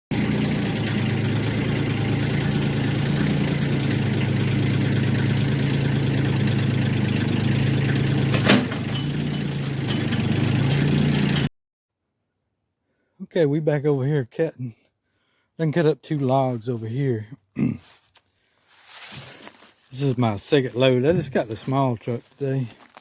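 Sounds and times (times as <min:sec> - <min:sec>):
engine idling: 0:00.1 - 0:11.5.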